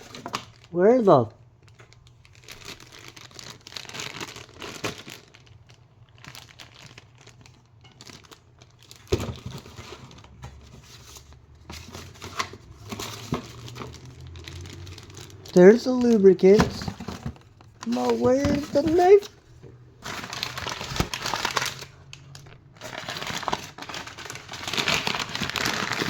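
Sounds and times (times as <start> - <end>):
packing paper crinkling: 0.0 - 26.0.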